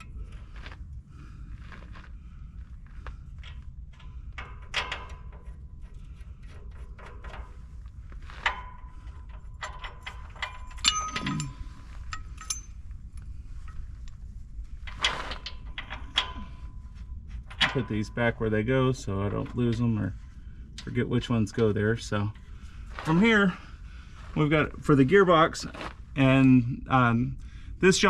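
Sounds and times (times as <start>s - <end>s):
steady low hum: 0.0s - 28.0s
metal nuts and bolts clinking: 3.4s - 13.9s, 14.8s - 18.2s.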